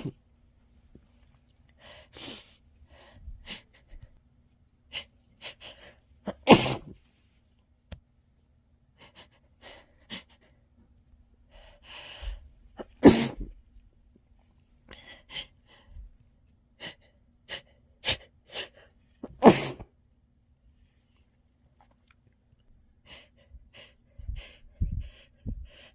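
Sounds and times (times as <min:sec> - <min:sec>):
person sneezing into tissue: 0:06.3 - 0:07.1, 0:12.8 - 0:13.6, 0:19.2 - 0:19.9
quick breaths: 0:11.5 - 0:13.6.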